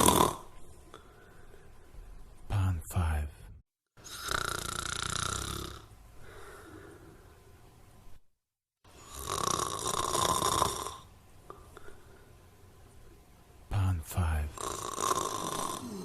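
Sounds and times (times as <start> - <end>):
person snoring: 0.0 - 1.0, 4.0 - 7.2, 9.0 - 11.1, 14.5 - 16.0.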